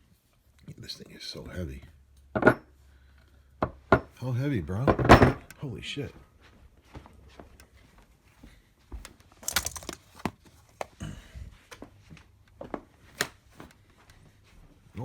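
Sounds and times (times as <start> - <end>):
packaging crinkling: 9.4 - 10.9
tool clicks and knocks: 9.4 - 10.9.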